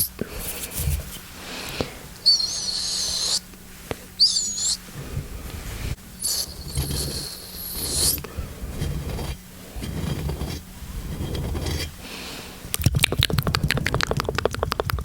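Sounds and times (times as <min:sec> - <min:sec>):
soft rubbing: 0:04.9 - 0:12.0
breathy hiss: 0:12.0 - 0:12.7
muffled wet mouth sounds: 0:12.8 - 0:15.0
sharp mouth clicks: 0:12.8 - 0:15.0.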